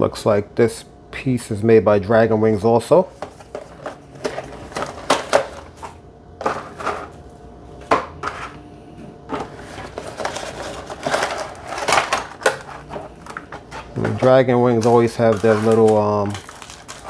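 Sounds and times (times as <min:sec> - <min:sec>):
packaging rustling: 0:03.1 - 0:08.6, 0:09.3 - 0:17.0.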